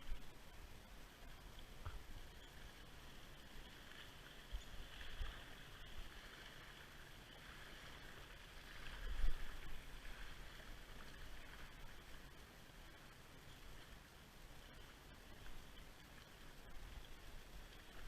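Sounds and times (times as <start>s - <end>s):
flowing river water: 0.0s - 18.0s.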